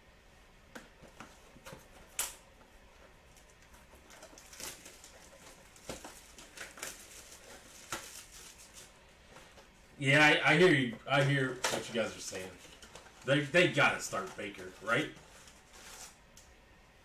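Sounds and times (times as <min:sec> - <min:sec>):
cards and packaging rustling: 0:00.8 - 0:16.4.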